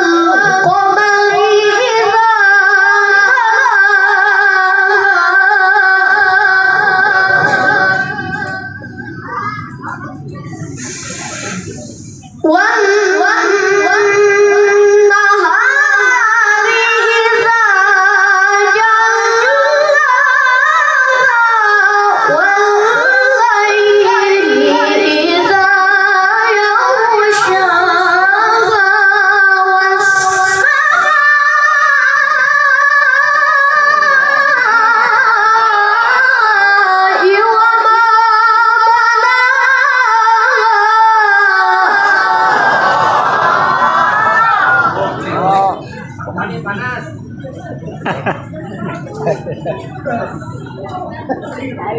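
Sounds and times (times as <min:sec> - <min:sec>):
high voice singing a melody: 0:12.4 - 0:42.6.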